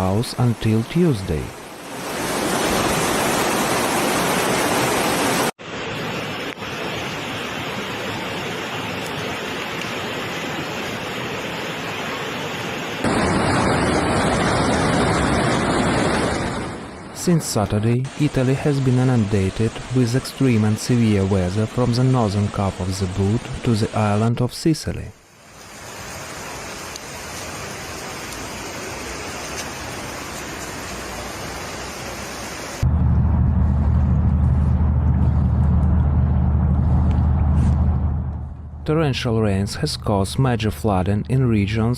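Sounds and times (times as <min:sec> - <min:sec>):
floodwater rushing: 0:00.0 - 0:24.3, 0:24.9 - 0:32.9.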